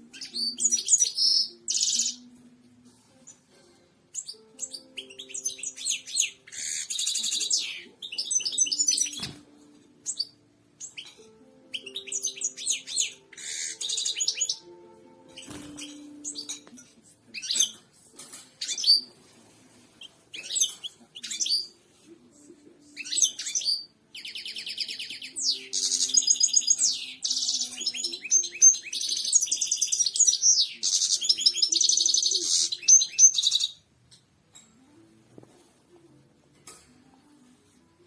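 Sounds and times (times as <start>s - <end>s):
goldfinch twittering and trilling: 4.1s - 9.4s, 10.0s - 14.7s, 23.0s - 33.8s.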